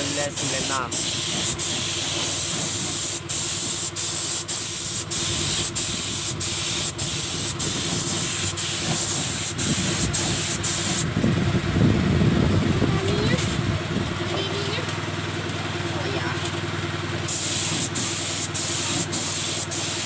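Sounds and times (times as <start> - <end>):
paint spray gun hissing: 0.0 - 11.1, 17.3 - 20.0.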